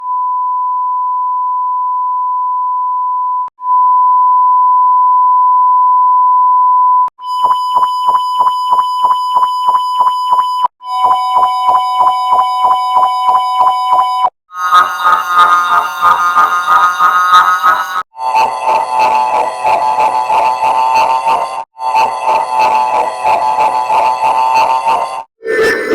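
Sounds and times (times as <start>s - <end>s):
synthetic beep tone: 7.2s - 25.3s.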